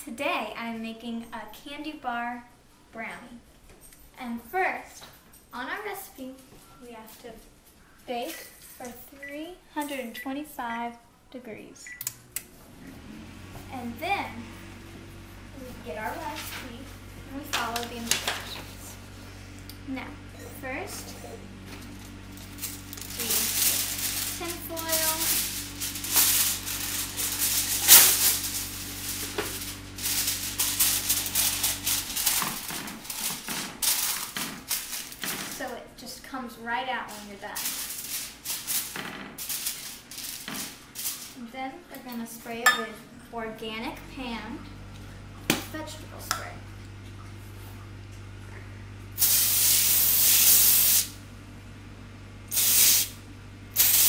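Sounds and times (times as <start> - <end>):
steady low hum: 6.6 - 54.0
aluminium foil crinkling: 21.9 - 35.7, 37.1 - 41.4
aerosol spray hissing: 49.2 - 51.1, 52.5 - 53.1, 53.8 - 54.0.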